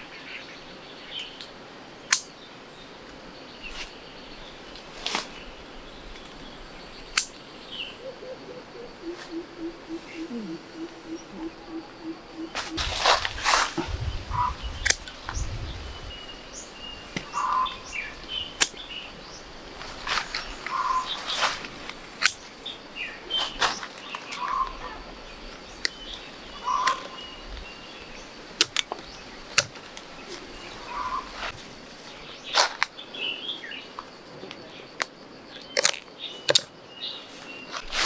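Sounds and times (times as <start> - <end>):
bird chirping: 5.4 - 21.6, 22.3 - 29.5.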